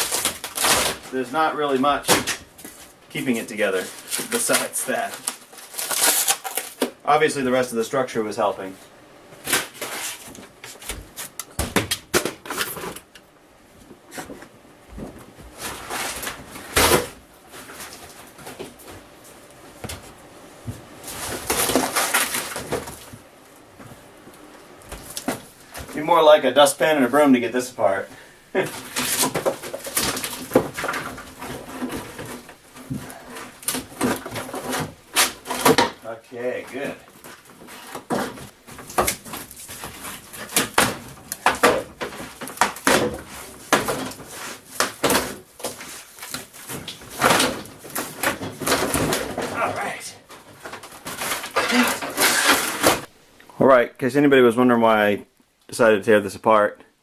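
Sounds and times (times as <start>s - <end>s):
panelling cracking and snapping: 0.0s - 7.1s, 20.9s - 23.6s, 27.5s - 53.5s.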